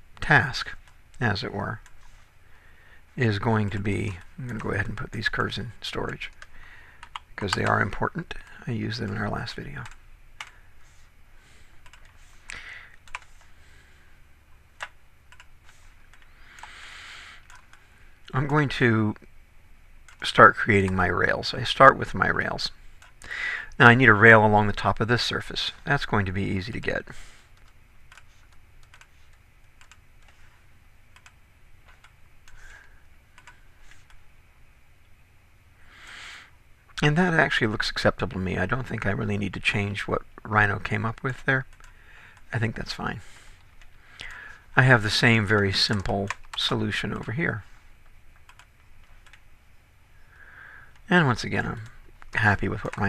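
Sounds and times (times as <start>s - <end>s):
faint low hum: 0.0s - 53.0s
keyboard clicks: 6.0s - 7.8s, 11.8s - 13.3s, 14.8s - 16.8s, 17.4s - 18.6s, 27.6s - 30.4s, 31.1s - 32.6s, 33.4s - 34.2s, 48.4s - 49.4s
computer mouse clicks: 11.8s - 12.2s, 13.0s - 13.5s, 14.8s - 16.8s, 17.4s - 17.8s, 27.6s - 32.6s, 33.4s - 34.2s, 41.7s - 42.4s, 48.4s - 49.4s.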